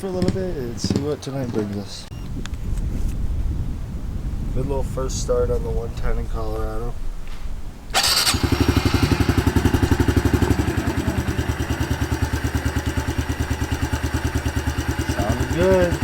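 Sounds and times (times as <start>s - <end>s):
motorcycle engine starting and idling: 7.9s - 16.0s.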